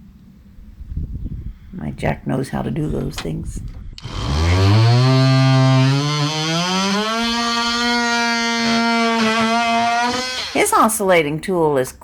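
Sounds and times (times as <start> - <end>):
oscillating multi-tool motor whine: 4.0 - 10.6.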